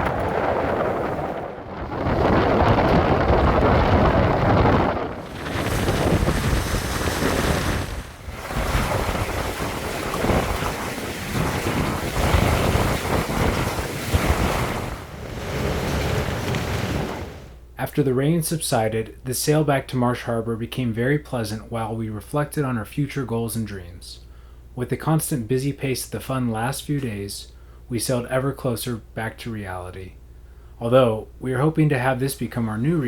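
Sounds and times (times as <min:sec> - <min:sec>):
wind buffeting microphone: 0:00.0 - 0:17.6
waves and water rushing: 0:04.5 - 0:17.6.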